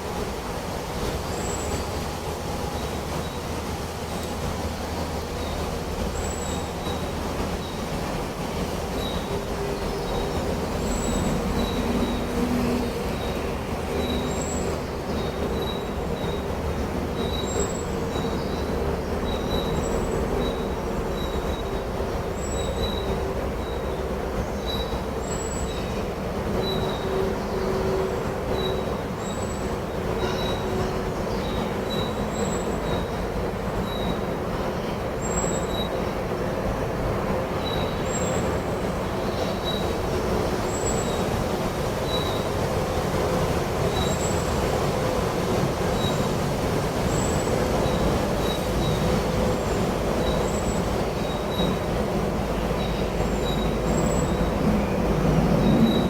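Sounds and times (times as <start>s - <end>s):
steady rushing noise: 36.6s - 56.0s.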